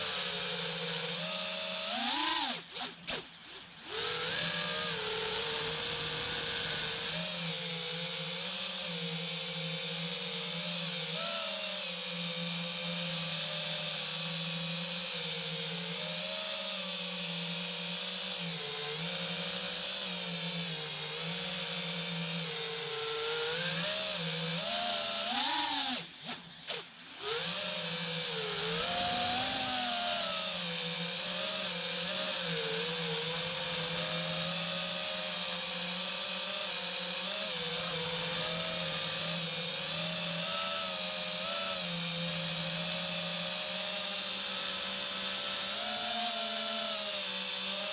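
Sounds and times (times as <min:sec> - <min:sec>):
drone motors whining: 0:00.0 - 0:47.9.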